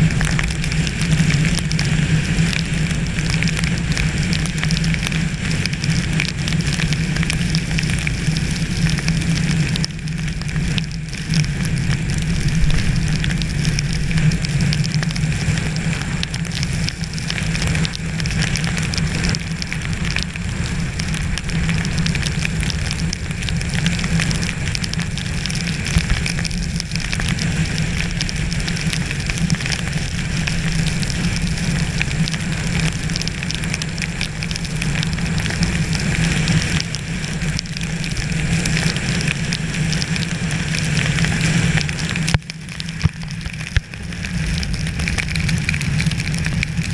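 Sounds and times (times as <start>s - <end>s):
constant low rumble: 0.0s - 46.9s
rain and sleet pattering: 0.0s - 46.9s.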